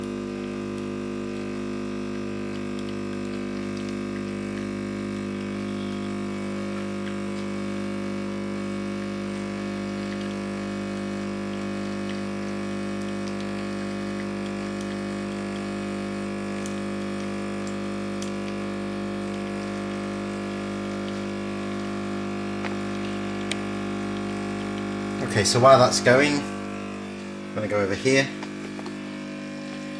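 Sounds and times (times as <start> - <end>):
espresso machine pump humming: 0.0 - 29.9.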